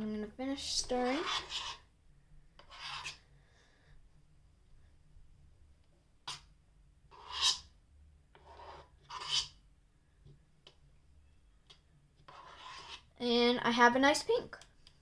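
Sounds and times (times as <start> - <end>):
spoon scraping around bowl: 1.0 - 1.9, 8.4 - 9.6, 12.3 - 13.1.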